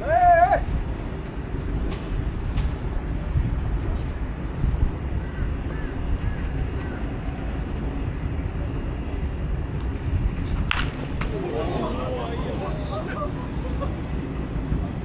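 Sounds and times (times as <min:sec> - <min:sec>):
faint distant calls: 0:02.9 - 0:09.1.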